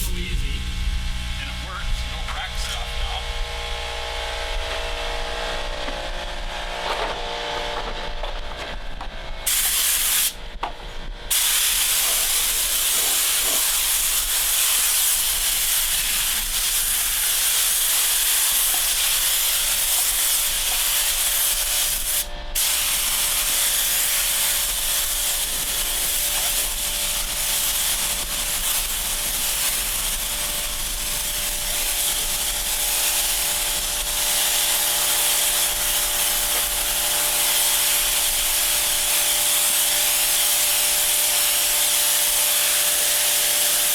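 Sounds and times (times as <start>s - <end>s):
sprayer nozzle hissing: 11.3s - 39.0s.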